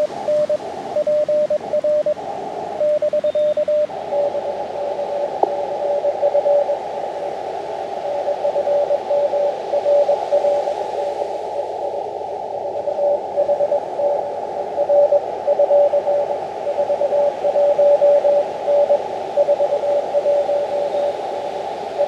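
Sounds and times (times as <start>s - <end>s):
morse code tone: 0.0s - 2.2s, 2.8s - 6.8s, 8.1s - 10.7s, 12.8s - 21.1s
radio hiss: 0.0s - 22.0s.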